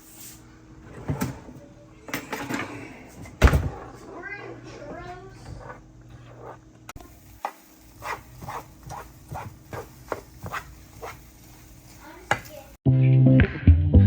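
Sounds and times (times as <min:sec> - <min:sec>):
utensil scraping a cooking pan: 0:03.7 - 0:06.7, 0:08.0 - 0:12.0.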